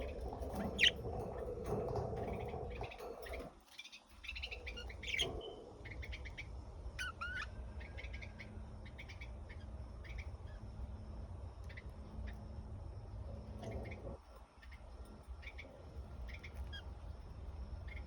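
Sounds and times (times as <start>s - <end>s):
parrots chirping: 0.0s - 10.6s, 13.5s - 17.1s
steady low hum: 0.0s - 18.0s.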